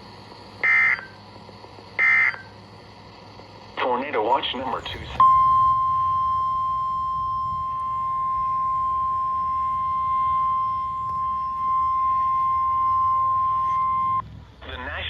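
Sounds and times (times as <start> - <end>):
high warning alarm tone: 0.6 - 1.2, 2.0 - 2.6, 4.7 - 14.2.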